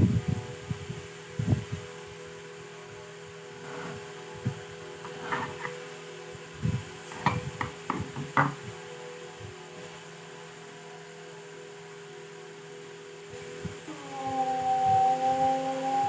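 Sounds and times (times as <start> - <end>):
electrical hum: 0.0 - 16.0.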